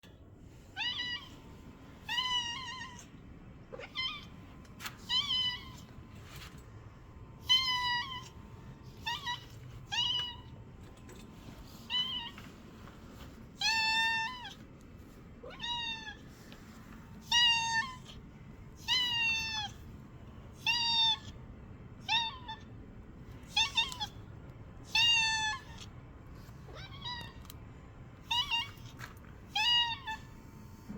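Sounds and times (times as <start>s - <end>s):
cat meowing: 0.8s - 1.4s, 2.0s - 3.1s, 3.8s - 4.4s, 7.4s - 10.6s, 13.6s - 14.6s, 15.4s - 16.3s, 18.8s - 19.8s, 24.9s - 25.9s, 26.7s - 27.5s, 28.2s - 30.3s.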